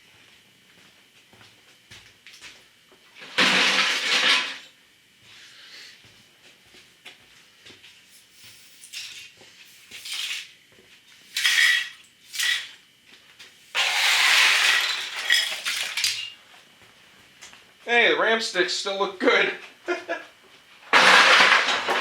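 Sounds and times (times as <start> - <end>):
computer parts clinking and scraping: 13.8 - 16.4.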